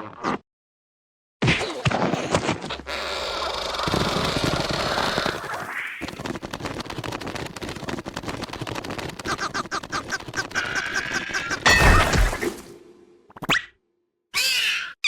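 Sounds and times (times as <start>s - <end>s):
fast rattling clatter: 3.9s - 11.6s
squeaky cartoon creature voices: 14.3s - 15.0s.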